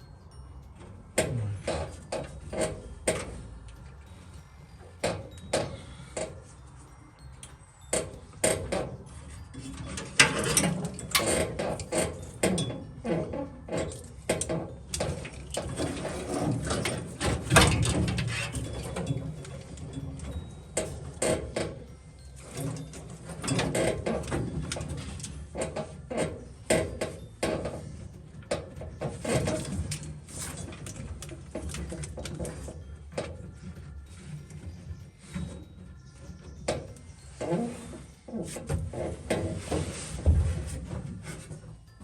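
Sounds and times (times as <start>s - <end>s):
metal scraping and rattling: 1.0s - 4.2s, 7.9s - 42.0s.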